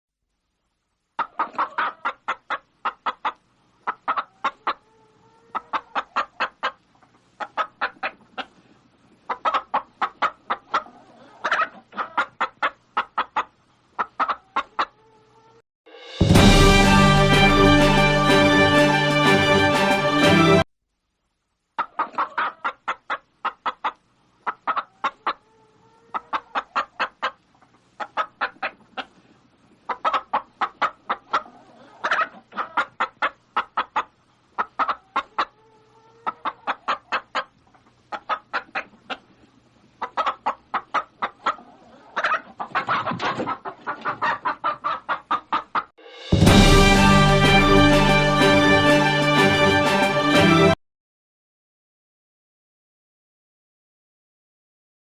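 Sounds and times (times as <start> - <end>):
hen clucking: 1.2 - 15.6, 21.8 - 46.4.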